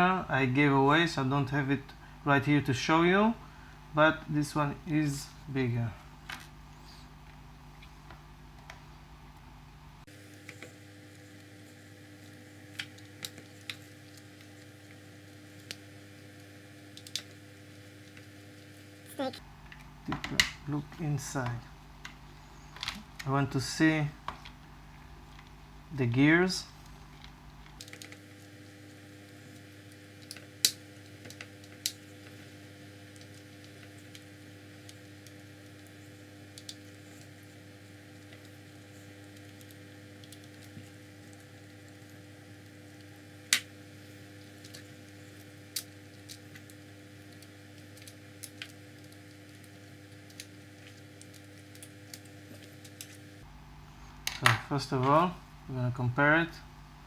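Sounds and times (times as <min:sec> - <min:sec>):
low electrical hum: 0:00.0 - 0:57.0.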